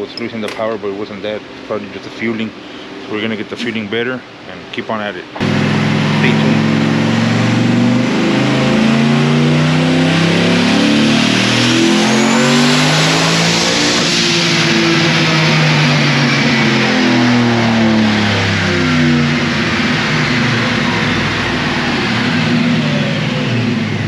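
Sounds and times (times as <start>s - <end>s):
turbo whine: 0.0s - 24.0s
engine revving at full throttle: 5.4s - 24.0s.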